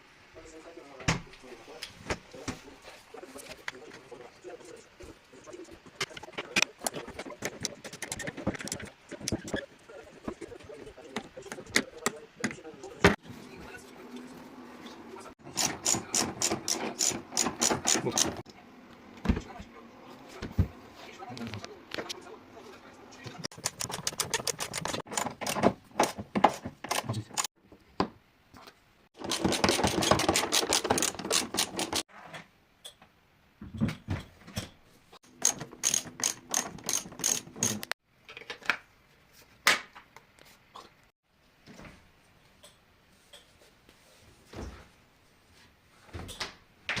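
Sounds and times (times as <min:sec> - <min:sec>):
knocks and clacks of parts: 0:15.4 - 0:18.4, 0:23.3 - 0:28.1, 0:29.2 - 0:32.1, 0:33.6 - 0:38.5
ratchet clicking fast: 0:15.5 - 0:18.4, 0:29.3 - 0:32.0, 0:35.4 - 0:37.9.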